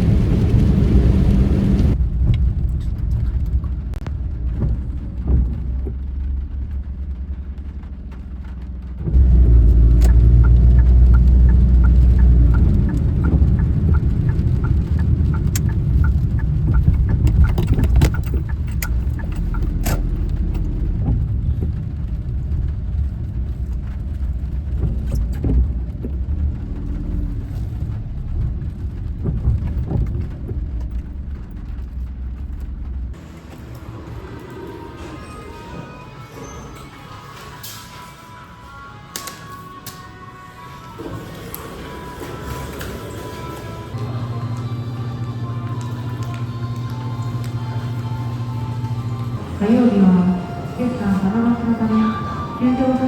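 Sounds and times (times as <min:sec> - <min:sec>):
car engine and road noise: 0:00.0 - 0:53.0
regular ticking: 0:01.7 - 0:33.2.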